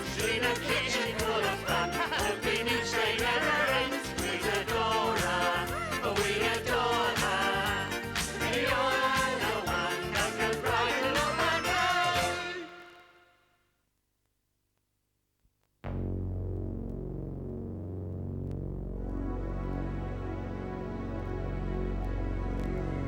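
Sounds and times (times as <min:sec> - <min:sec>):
band with drum beat: 0:00.0 - 0:12.4
person singing a melody: 0:00.0 - 0:13.1.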